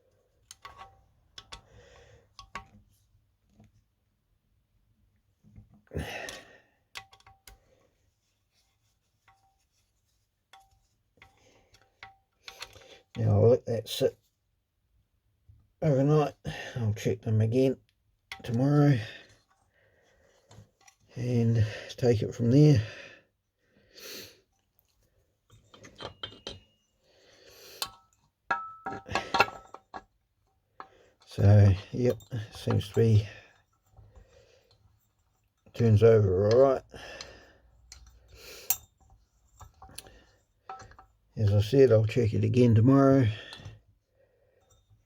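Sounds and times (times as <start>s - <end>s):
small metal parts clicking and knocking: 0.4s - 1.7s, 2.3s - 2.8s, 6.9s - 7.7s, 10.5s - 12.9s, 24.8s - 26.8s, 27.8s - 41.8s.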